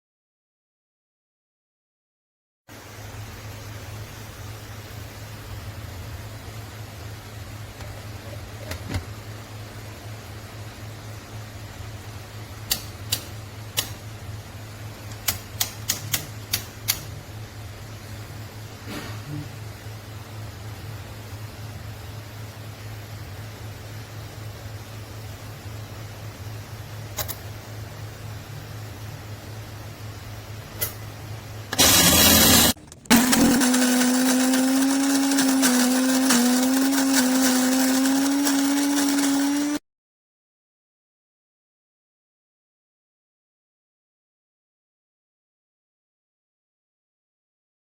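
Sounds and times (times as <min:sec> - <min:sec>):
coffee grinder running: 0:31.7 - 0:39.8
loud burst of noise: 0:31.7 - 0:39.8.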